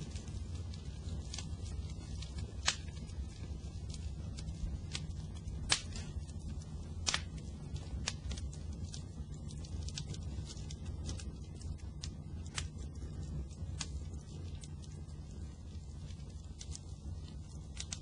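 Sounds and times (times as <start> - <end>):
fire crackling and popping: 0.0 - 18.0
low rumble: 0.0 - 18.0.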